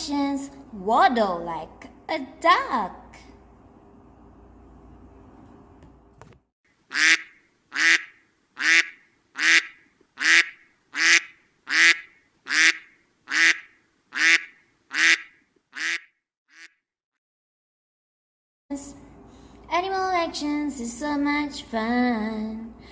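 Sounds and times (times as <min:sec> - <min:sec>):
duck quacking: 0:06.9 - 0:16.8.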